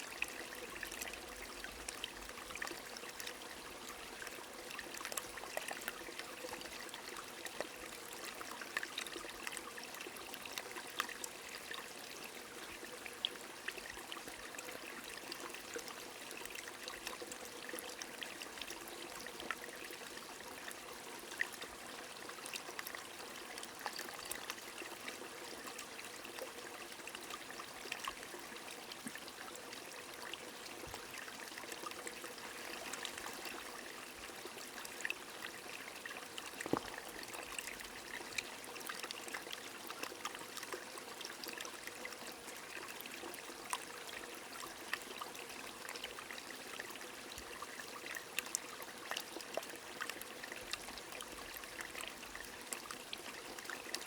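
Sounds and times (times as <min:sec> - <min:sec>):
running stream: 0:00.0 - 0:54.0.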